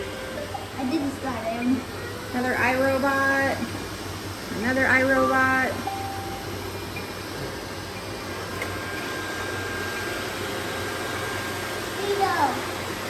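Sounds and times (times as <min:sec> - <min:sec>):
faint high whine: 0:04.6 - 0:08.2.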